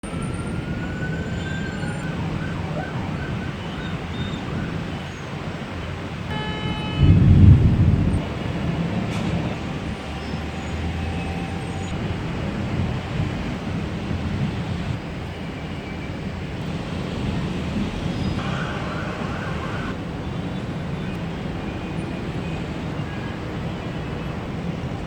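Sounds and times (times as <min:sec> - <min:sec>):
faint siren: 0:00.0 - 0:13.1, 0:16.7 - 0:25.0
city traffic rumble: 0:00.0 - 0:25.0
thunder rumble: 0:00.0 - 0:25.0
short horn-like tone: 0:06.3 - 0:08.2.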